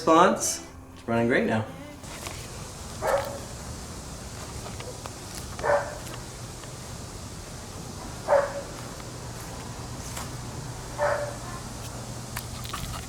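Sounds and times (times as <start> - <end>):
steady low hum: 0.0 - 13.0
dog barking: 2.4 - 6.5, 7.9 - 9.6, 10.8 - 12.8.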